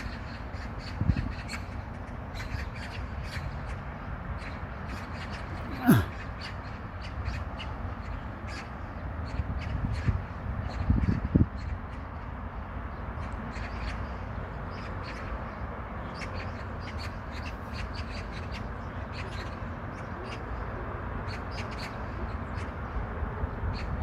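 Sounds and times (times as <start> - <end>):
low rumble of wind: 0.0 - 24.0.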